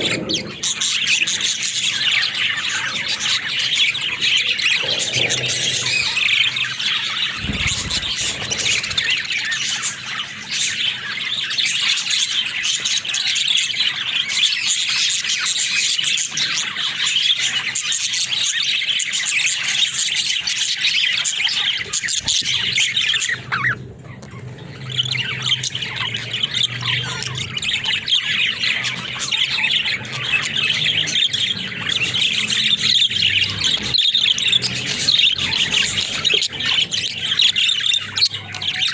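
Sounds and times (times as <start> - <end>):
budgerigars chattering: 0.0 - 38.9.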